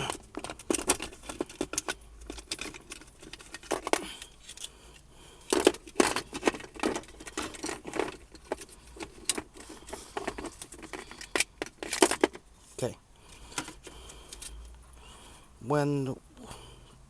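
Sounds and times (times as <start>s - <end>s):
small plastic parts clicking: 0.0s - 12.4s.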